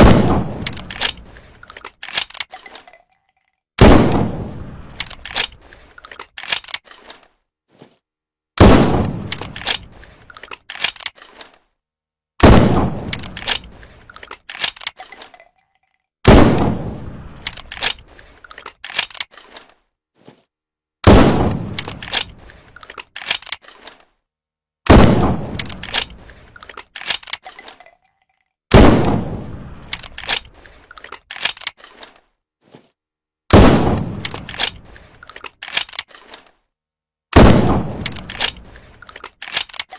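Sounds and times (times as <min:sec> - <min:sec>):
sharp mechanical clicks: 0:00.5 - 0:03.0, 0:04.8 - 0:07.2, 0:09.0 - 0:11.6, 0:12.8 - 0:15.5, 0:17.3 - 0:19.7, 0:21.5 - 0:24.0, 0:25.3 - 0:27.9, 0:29.8 - 0:32.1, 0:33.9 - 0:36.5, 0:37.8 - 0:39.9.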